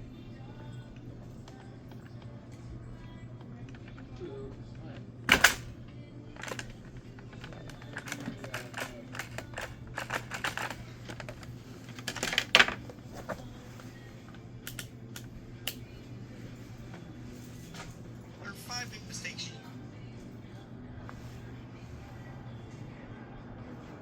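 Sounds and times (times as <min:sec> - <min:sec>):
steady low hum: 0:00.0 - 0:24.0
small hard parts clicking: 0:06.4 - 0:12.9.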